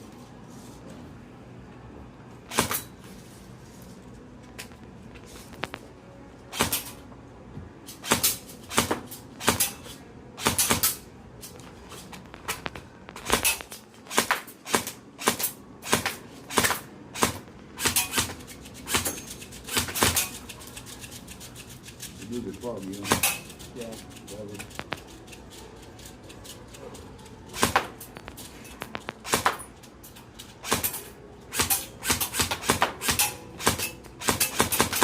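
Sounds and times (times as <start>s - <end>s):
airsoft gun firing: 6.5s - 6.9s, 8.0s - 9.8s, 13.2s - 18.3s, 27.6s - 28.0s, 29.2s - 29.6s, 30.6s - 35.0s.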